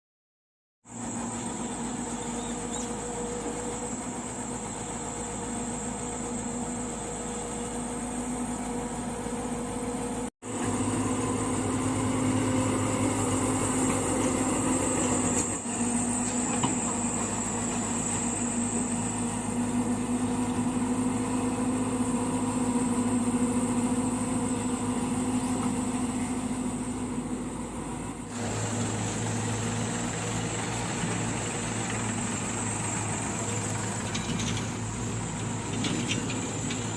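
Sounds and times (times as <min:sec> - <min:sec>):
heavy machinery diesel engines: 0:00.9 - 0:36.9.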